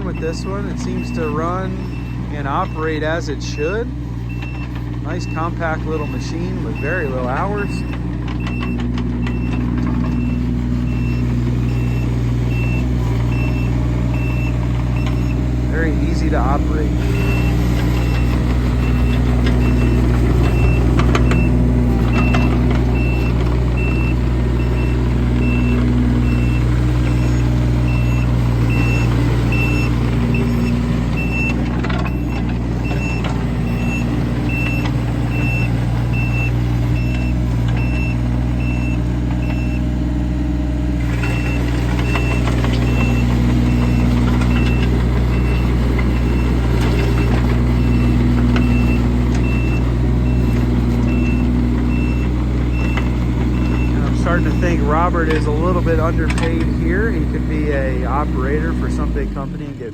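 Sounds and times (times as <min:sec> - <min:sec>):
diesel engine running: 0:00.0 - 0:59.9
motion alarm beeping: 0:00.1 - 0:39.8.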